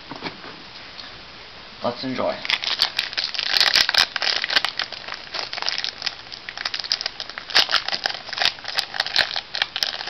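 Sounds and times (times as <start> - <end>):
foil wrapper crinkling: 2.4 - 10.0.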